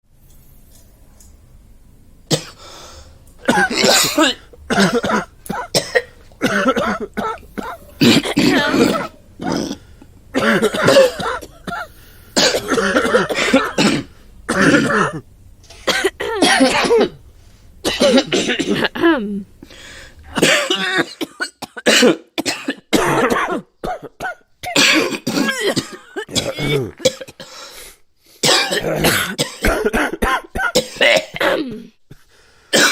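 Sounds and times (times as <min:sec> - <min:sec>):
person breathing in: 0:02.6 - 0:03.2, 0:11.8 - 0:12.4, 0:19.6 - 0:20.3, 0:32.2 - 0:32.7
person coughing: 0:03.4 - 0:15.2, 0:15.8 - 0:17.2, 0:17.8 - 0:19.4, 0:20.3 - 0:27.6, 0:28.4 - 0:32.9.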